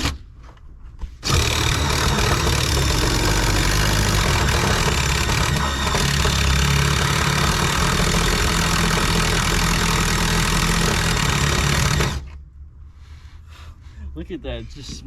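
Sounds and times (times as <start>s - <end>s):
power drill grinding metal: 1.2s - 12.3s.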